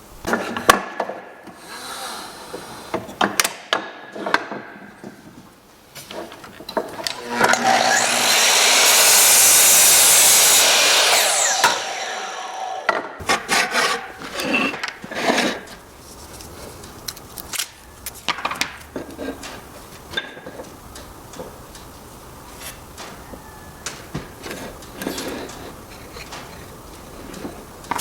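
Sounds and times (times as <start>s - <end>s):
power saw cutting wood: 6.9s - 15.7s.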